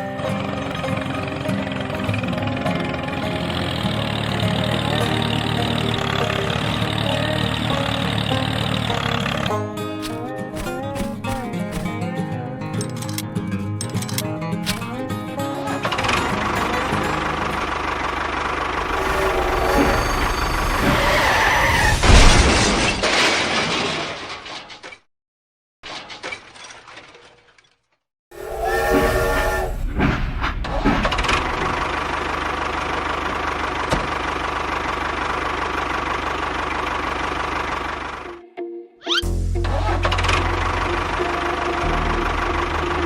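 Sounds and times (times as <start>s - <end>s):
small motor running: 18.7s - 20.9s
rough rush: 18.8s - 23.6s.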